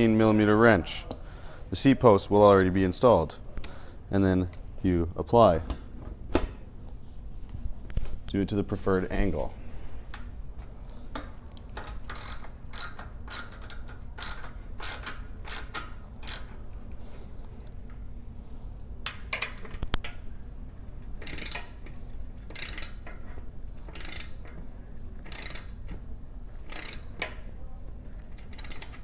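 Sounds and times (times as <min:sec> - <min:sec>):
wrench clicking: 0:11.1 - 0:16.7, 0:21.2 - 0:24.6, 0:25.2 - 0:26.0, 0:26.6 - 0:27.4, 0:28.3 - 0:29.0.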